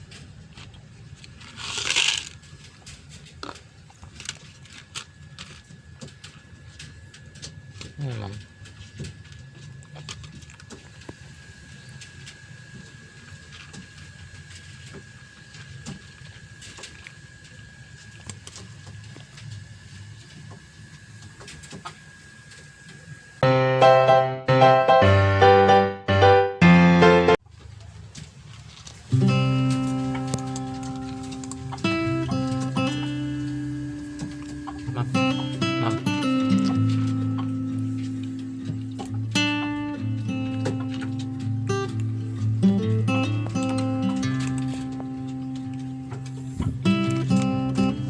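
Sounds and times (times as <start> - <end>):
cats eating with crunching: 0.0 - 23.4, 27.4 - 48.0
faint background hum: 0.0 - 25.9, 26.6 - 48.0
electric piano music: 23.4 - 27.4, 29.1 - 48.0.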